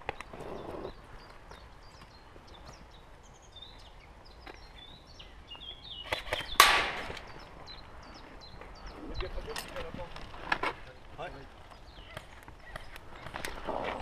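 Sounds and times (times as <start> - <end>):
small birds chirping: 0.0 - 14.0
loud echoing crack: 6.6 - 7.4.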